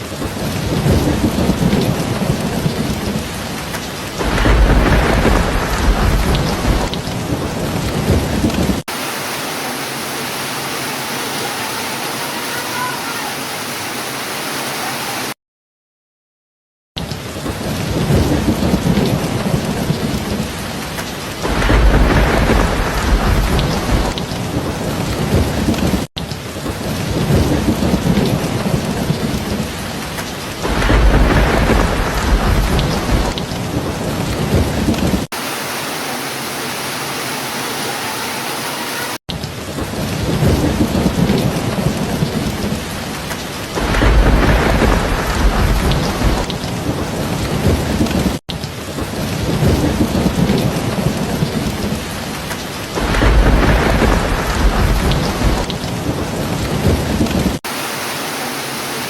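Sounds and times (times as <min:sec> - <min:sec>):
rolling thunder: 0:00.0 - 0:08.9, 0:17.4 - 0:35.3, 0:39.7 - 0:48.4, 0:49.0 - 0:57.6
heavy rain: 0:00.0 - 0:15.4, 0:17.0 - 0:59.0.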